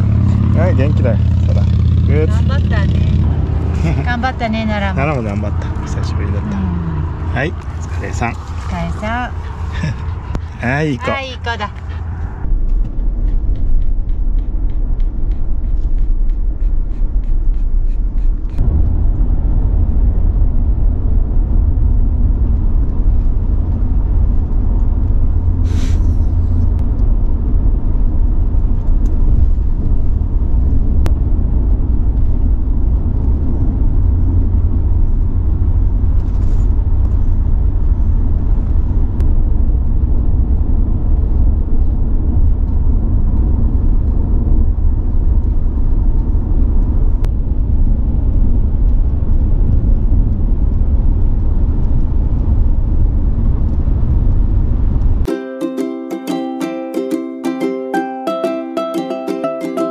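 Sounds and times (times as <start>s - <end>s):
car driving rumble inside cabin: 0.0s - 55.3s.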